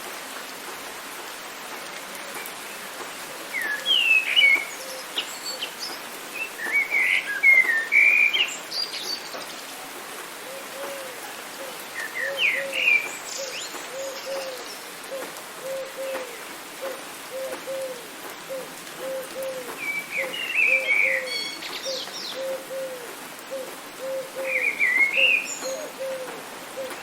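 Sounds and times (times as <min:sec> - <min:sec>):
rain hiss: 0:00.0 - 0:27.0
songbird phrases: 0:02.6 - 0:16.3, 0:19.0 - 0:23.0, 0:24.0 - 0:27.0
low hooting bird calls: 0:10.4 - 0:27.0.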